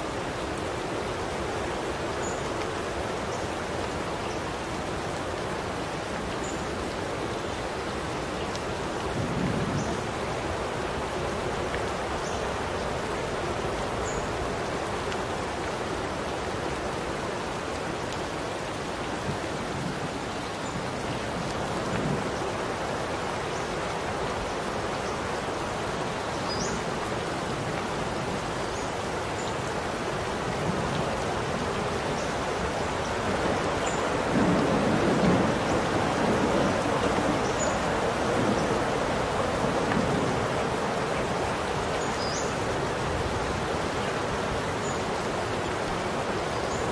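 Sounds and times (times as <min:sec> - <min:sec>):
steady rain falling: 0:00.0 - 0:46.9.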